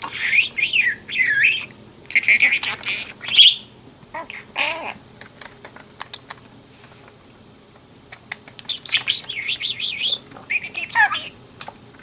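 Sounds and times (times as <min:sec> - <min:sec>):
budgerigar chirping: 0:00.1 - 0:03.7, 0:08.7 - 0:11.4.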